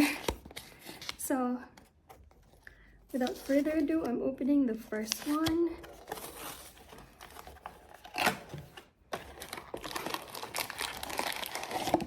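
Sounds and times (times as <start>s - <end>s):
packaging rustle and crackling: 5.0s - 12.0s
packaging crinkling and tearing: 5.1s - 12.0s.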